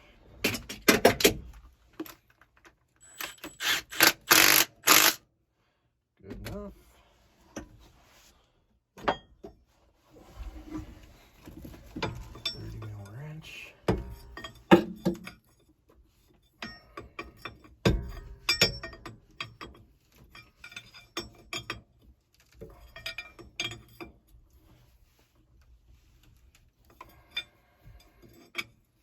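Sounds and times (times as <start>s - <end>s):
metal tools clinking on steel: 12.0s - 15.5s.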